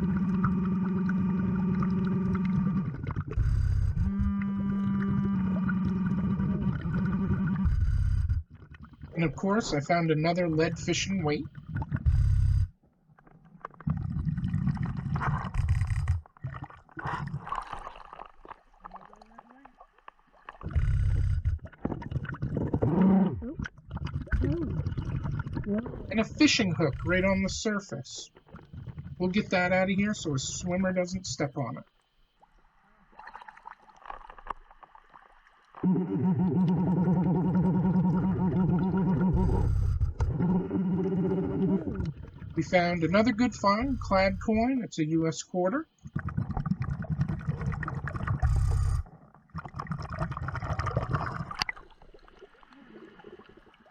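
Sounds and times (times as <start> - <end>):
underwater breathing bubbles gurgling: 0.0 - 12.6, 13.7 - 27.8, 35.8 - 44.7, 46.0 - 53.9.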